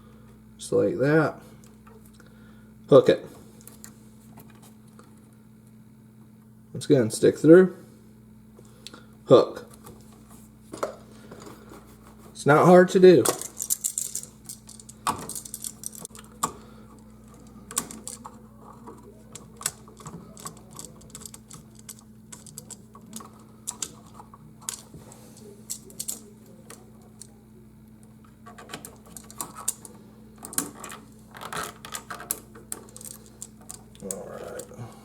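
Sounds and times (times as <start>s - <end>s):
faint steady hum: 0.0s - 35.0s
hand tools clicking on wires: 13.2s - 27.4s, 28.2s - 34.8s.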